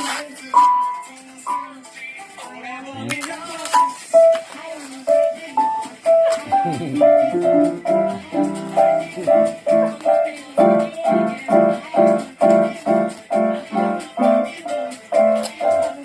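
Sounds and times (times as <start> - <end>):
keyboard chords in bouncy rhythm: 0.5 - 1.8, 3.8 - 4.4, 5.1 - 16.0.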